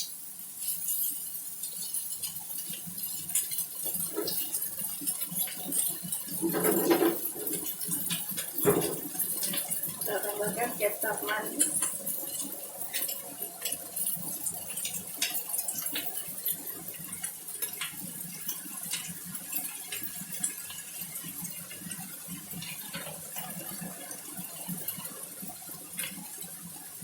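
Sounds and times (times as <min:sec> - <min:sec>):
fried rice sizzling in a pan: 0:00.0 - 0:27.0
utensil scraping a pan: 0:00.6 - 0:10.8.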